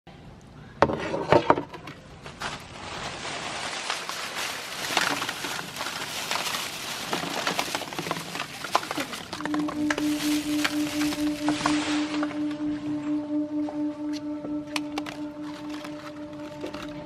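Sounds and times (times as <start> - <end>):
crisp shells crunching in a grinder: 3.0 - 11.2.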